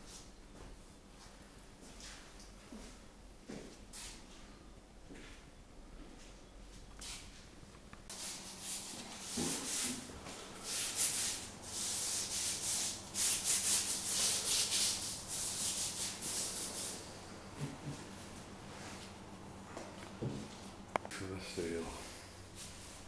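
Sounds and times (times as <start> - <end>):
brush scrubbing tile floor: 8.1 - 17.1.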